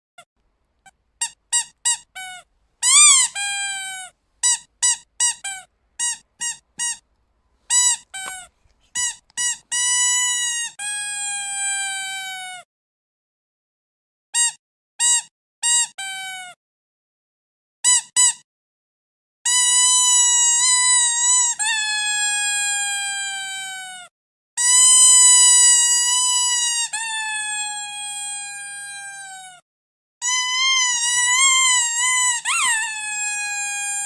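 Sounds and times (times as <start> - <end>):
squeaky dog toy squeaking: 0.8 - 12.6, 14.4 - 16.5, 19.5 - 24.0, 24.6 - 29.6, 30.2 - 34.0.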